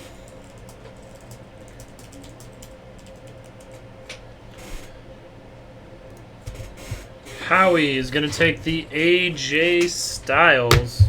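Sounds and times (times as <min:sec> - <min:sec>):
typing on computer keyboard: 0:00.0 - 0:03.8
faint steady hum: 0:00.0 - 0:11.0.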